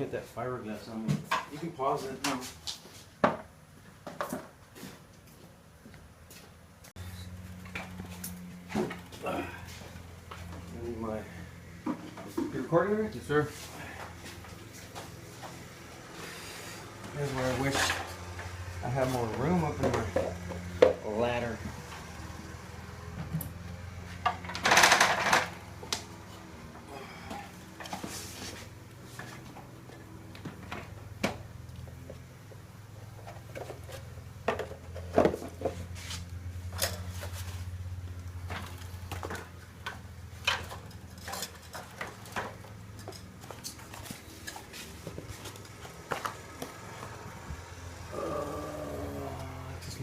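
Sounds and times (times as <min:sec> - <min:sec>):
steady low hum: 0:04.6 - 0:24.6, 0:25.4 - 0:50.0
loud clatter: 0:24.4 - 0:25.6
knocks clicks and scrapes of hand work: 0:38.3 - 0:46.8.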